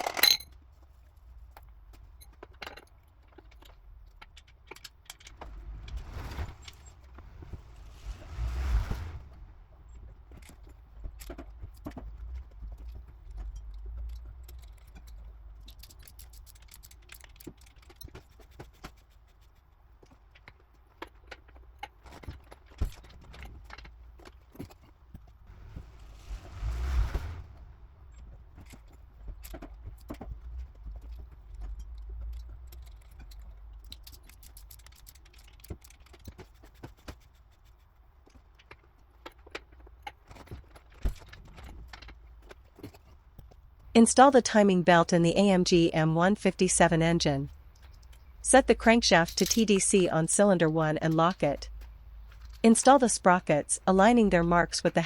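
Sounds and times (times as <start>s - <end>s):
metal tools clinking: 0.0s - 0.6s
low rumble: 5.1s - 11.2s, 25.3s - 31.0s.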